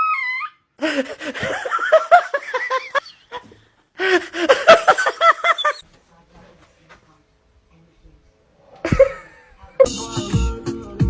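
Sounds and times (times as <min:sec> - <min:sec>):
person laughing: 0:00.8 - 0:05.8, 0:08.8 - 0:10.0.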